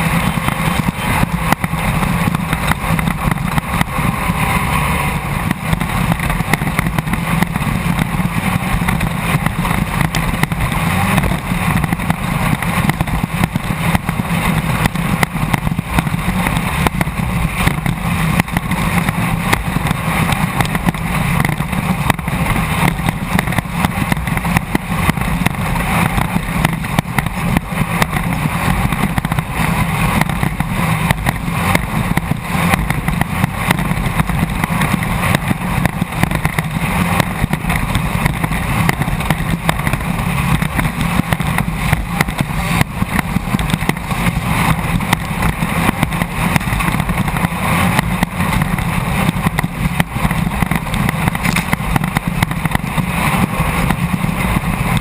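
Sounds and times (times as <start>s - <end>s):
engine running hard: 0.0s - 55.0s
clatter and knocks: 5.4s - 55.0s.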